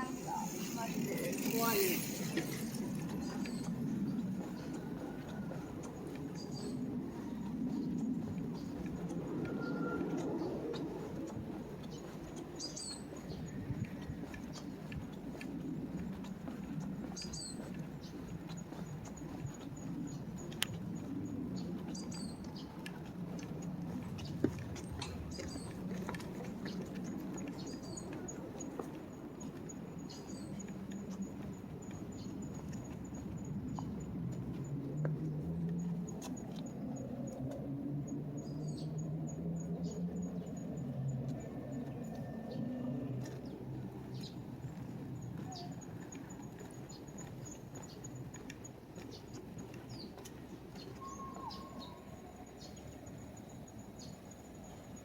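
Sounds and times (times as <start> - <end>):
low city hum: 0.0 - 55.0
bird chirps: 50.8 - 52.9.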